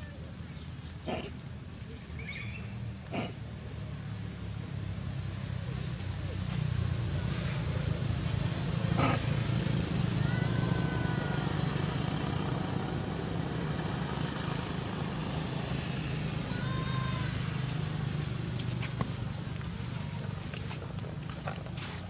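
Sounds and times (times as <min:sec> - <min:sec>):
vehicle engine rumble: 0:00.0 - 0:22.0
faint high-pitched calls: 0:02.1 - 0:02.8.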